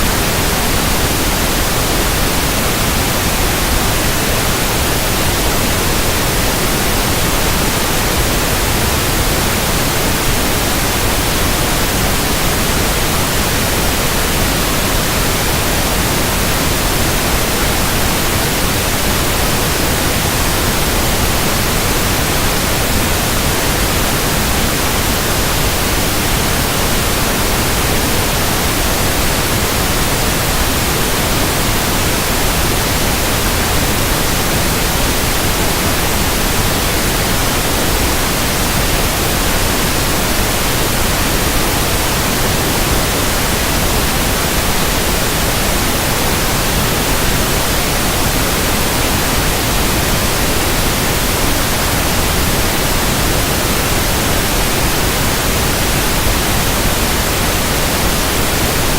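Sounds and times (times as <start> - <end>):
pink noise hiss: 0.0 - 58.9.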